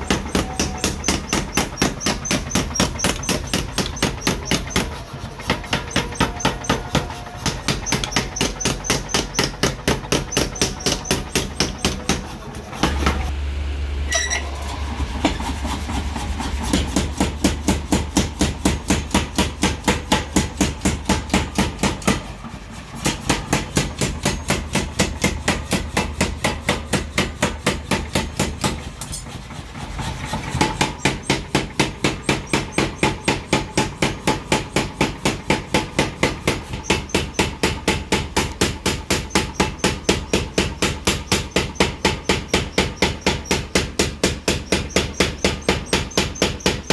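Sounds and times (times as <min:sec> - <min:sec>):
power hammer blows: 0:00.0 - 0:13.4
low motor hum: 0:09.8 - 0:18.2.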